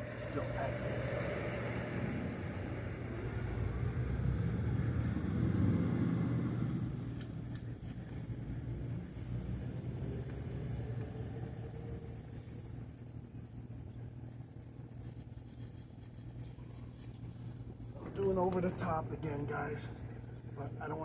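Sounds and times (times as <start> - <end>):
road traffic rumbling: 0.0 - 14.4.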